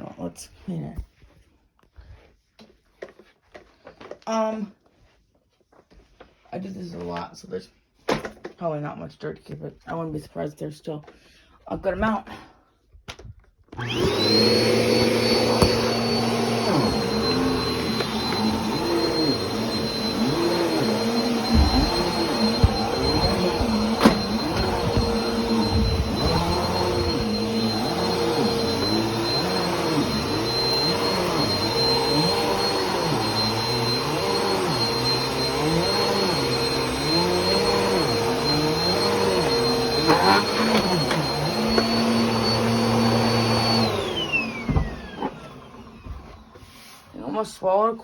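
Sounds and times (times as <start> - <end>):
vacuum cleaner whining: 13.7 - 47.8.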